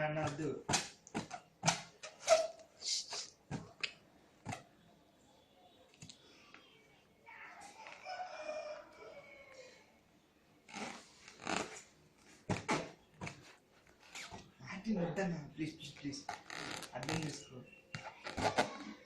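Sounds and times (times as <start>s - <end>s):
rooster-like crowing call: 7.8s - 9.8s.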